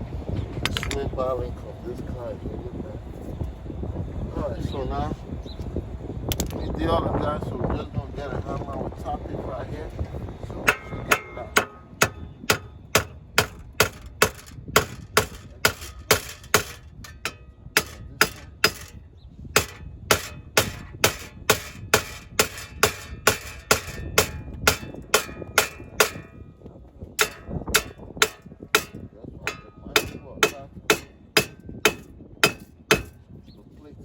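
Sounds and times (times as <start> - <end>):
hammer striking metal: 10.7 - 19.0, 19.6 - 26.4, 27.2 - 33.2.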